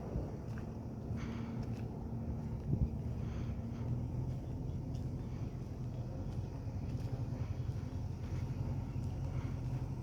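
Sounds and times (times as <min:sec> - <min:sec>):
diesel engine humming: 0:00.0 - 0:10.0.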